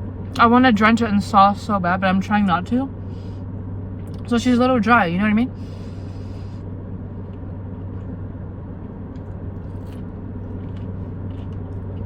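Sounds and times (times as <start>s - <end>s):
chewing clicks: 9.1s - 12.0s.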